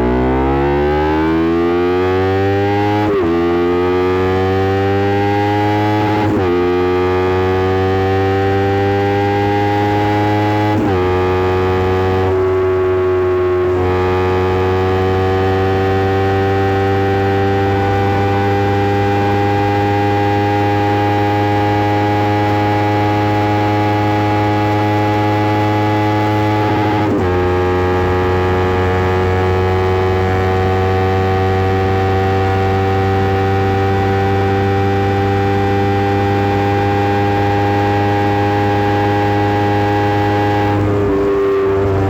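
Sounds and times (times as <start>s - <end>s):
motorcycle engine accelerating: 0.0s - 42.0s.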